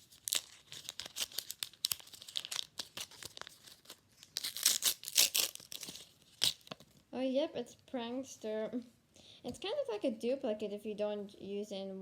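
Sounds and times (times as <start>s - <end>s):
plastic wrapper tearing and crinkling: 0.0s - 6.9s.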